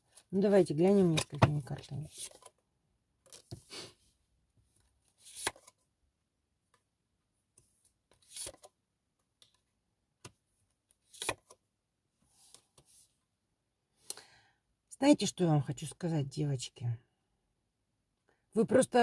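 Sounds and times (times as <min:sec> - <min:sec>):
cards rustling and slapping on table: 0:05.2 - 0:05.8, 0:08.1 - 0:08.7, 0:11.0 - 0:11.6.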